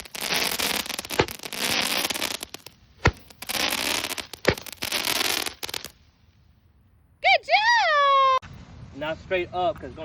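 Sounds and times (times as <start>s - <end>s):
firework sparks crackling: 0.0s - 6.0s
firework pop: 4.4s - 4.8s.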